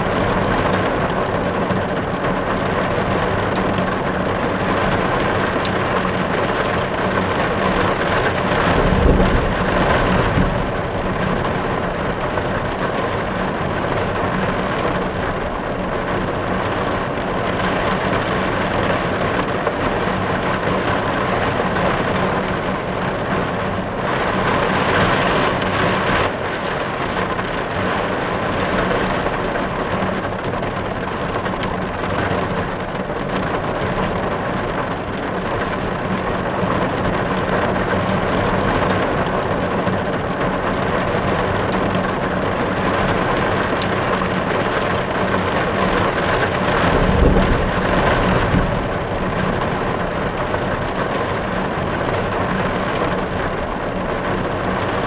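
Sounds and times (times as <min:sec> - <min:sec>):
rain pattering on car roof: 0:00.0 - 0:55.0
low rumble: 0:08.4 - 0:13.2, 0:46.2 - 0:52.2.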